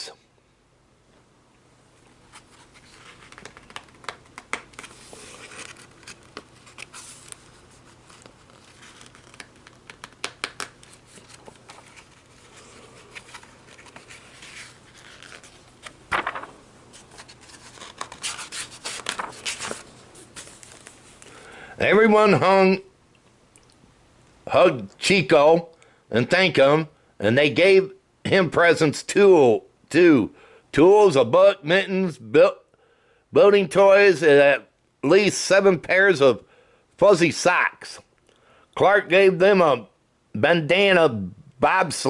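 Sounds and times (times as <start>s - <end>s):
paper pages turning and rustling: 2.3s - 21.3s.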